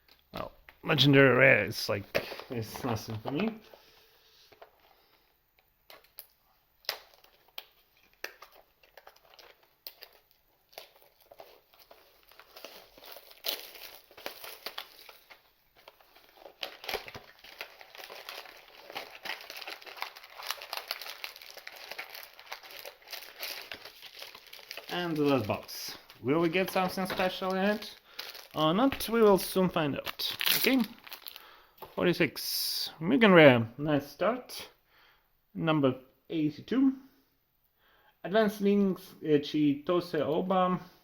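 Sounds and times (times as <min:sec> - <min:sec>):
plastic and foil packaging crinkling: 0:02.2 - 0:31.9.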